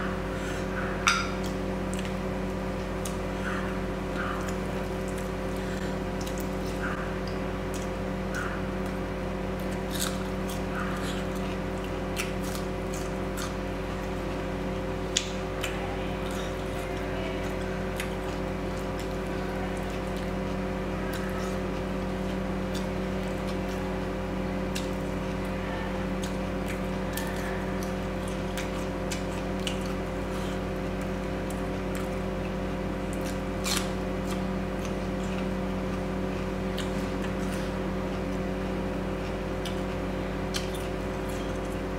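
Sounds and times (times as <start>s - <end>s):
electrical hum: 0.0s - 41.9s
wet chewing and mouth sounds: 1.1s - 41.9s.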